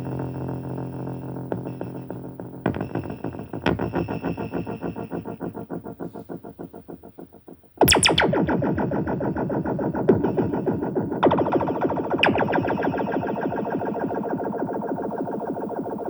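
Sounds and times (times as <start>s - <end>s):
electronic music with distorted synths: 7.8s - 15.3s.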